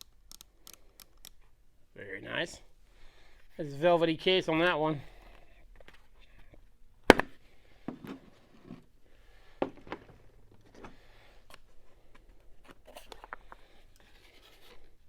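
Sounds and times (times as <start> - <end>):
light clicks and knocks of cases: 9.6 - 13.7.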